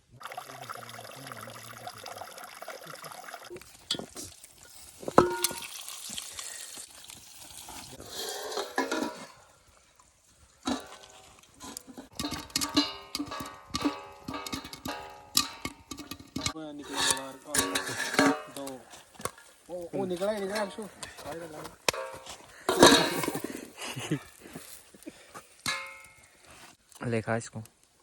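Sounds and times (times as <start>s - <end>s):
stirring and scraping in pan: 3.6s - 9.6s, 10.5s - 26.8s
metal utensil knocking on pot: 5.2s - 5.7s, 12.1s - 18.7s, 21.9s - 23.5s, 25.7s - 26.2s
clicks and clatter: 10.7s - 19.4s, 21.8s - 23.5s.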